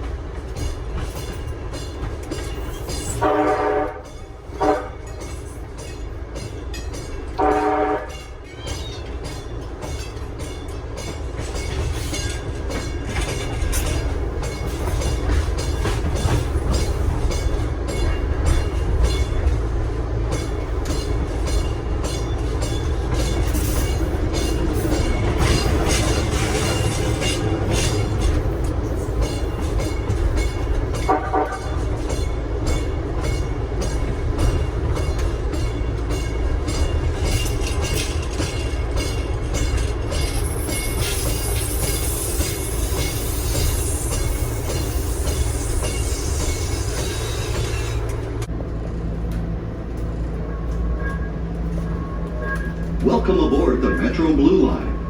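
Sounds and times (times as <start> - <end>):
wheels clicking over rail joints: 0.0 - 54.2
brief tone: 50.4 - 52.9.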